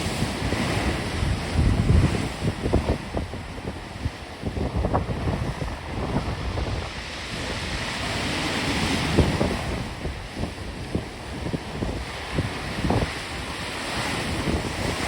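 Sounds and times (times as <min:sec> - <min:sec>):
storm waves breaking: 0:00.0 - 0:15.0
wind buffeting microphone: 0:00.0 - 0:15.0.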